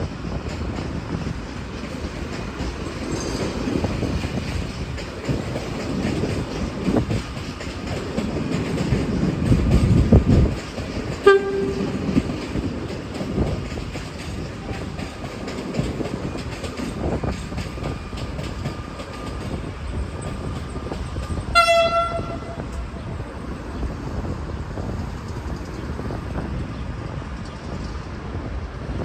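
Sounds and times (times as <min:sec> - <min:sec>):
diesel train running on rails: 0:00.0 - 0:29.0
train horn toot: 0:11.2 - 0:12.3, 0:21.5 - 0:22.8.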